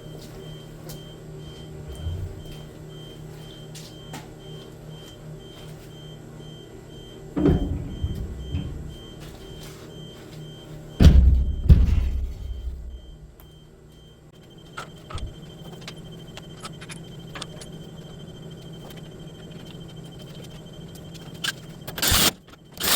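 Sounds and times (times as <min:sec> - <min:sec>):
low machinery hum: 0:00.0 - 0:21.9
loud thumps: 0:07.4 - 0:09.2, 0:11.0 - 0:13.3.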